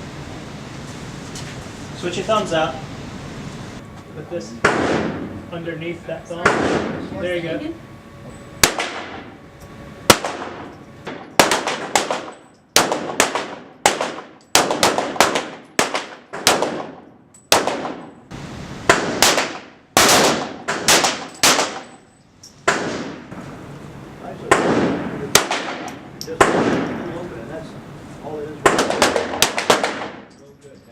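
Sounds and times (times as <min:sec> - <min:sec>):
pistol shots echoing: 0:04.6 - 0:05.3, 0:06.4 - 0:07.0, 0:08.6 - 0:09.3, 0:10.1 - 0:18.1, 0:18.9 - 0:22.0, 0:24.5 - 0:27.1, 0:28.6 - 0:30.3.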